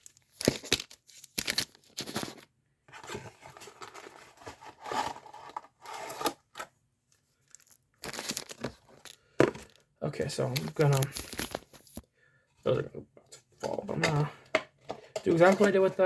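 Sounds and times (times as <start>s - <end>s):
pack wrappers crinkling: 0.0s - 2.5s, 7.4s - 12.0s
cardboard tearing and scraping: 0.4s - 6.6s.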